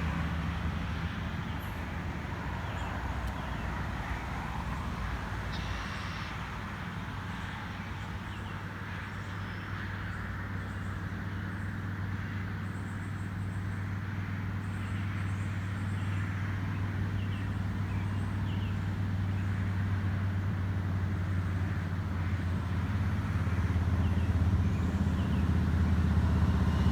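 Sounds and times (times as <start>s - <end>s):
vehicle engine humming: 16.8s - 26.9s.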